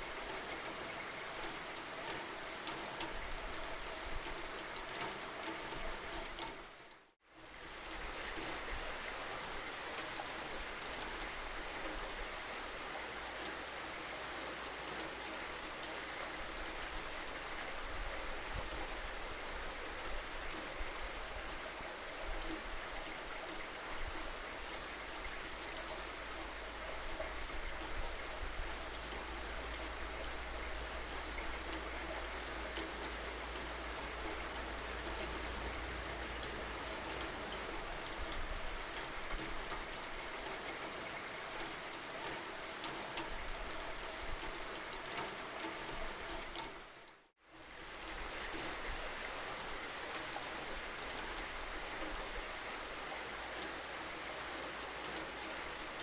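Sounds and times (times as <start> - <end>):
steady rain hiss: 0.0 - 56.0.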